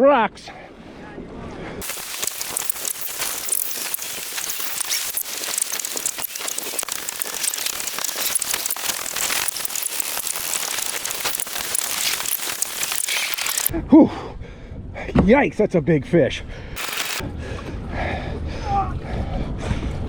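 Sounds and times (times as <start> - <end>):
water spattering and splashing: 1.8 - 13.7.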